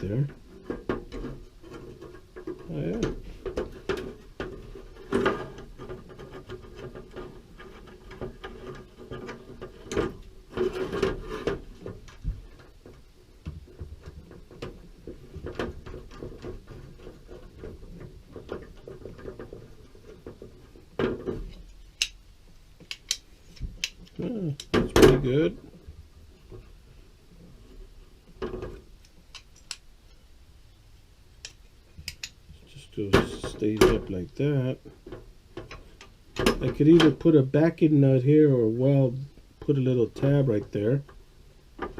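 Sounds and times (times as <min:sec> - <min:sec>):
faint steady hum: 0:00.0 - 0:41.9
small metal parts clicking: 0:22.8 - 0:24.7, 0:29.0 - 0:29.9, 0:31.4 - 0:32.4.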